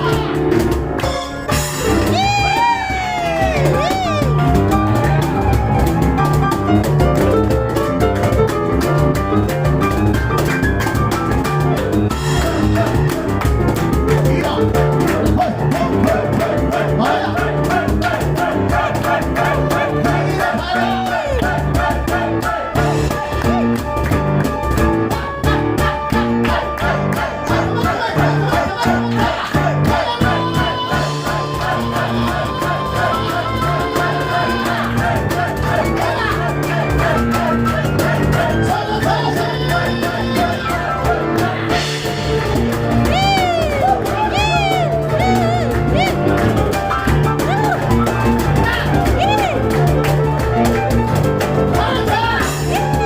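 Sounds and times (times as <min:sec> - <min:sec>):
cajon beat: 0:00.0 - 0:53.0
piano playing: 0:00.0 - 0:53.0.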